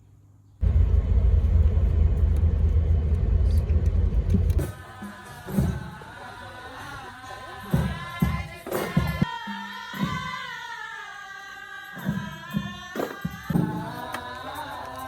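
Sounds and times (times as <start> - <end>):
voices singing together: 4.6 - 15.0.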